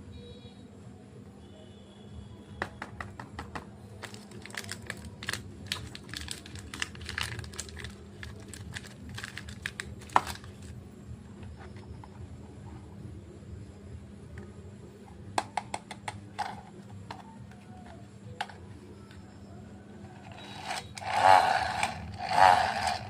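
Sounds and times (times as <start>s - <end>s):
packaging crinkling and crackling: 4.0s - 10.8s.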